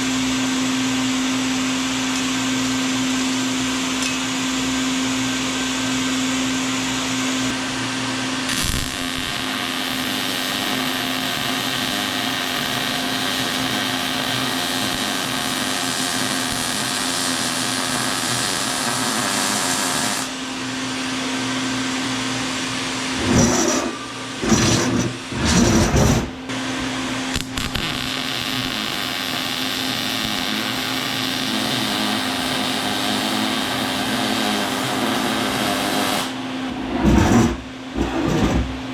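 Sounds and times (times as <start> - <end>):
power tool humming and hissing: 0.0 - 36.5
loud rough bursts: 23.1 - 26.5, 36.7 - 38.9.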